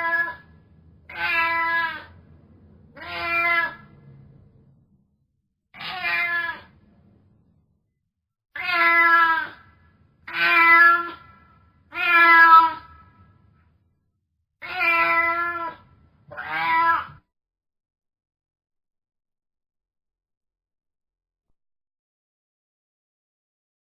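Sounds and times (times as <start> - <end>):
cat meowing: 0.0 - 2.2, 2.9 - 4.0, 5.8 - 6.8, 8.6 - 13.1, 14.6 - 17.2.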